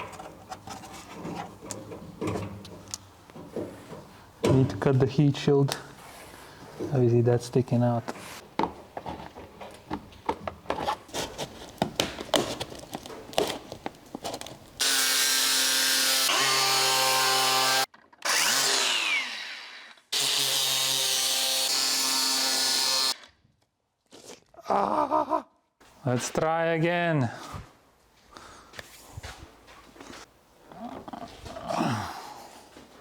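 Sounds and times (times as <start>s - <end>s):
power tool cutting metal: 14.8s - 23.2s.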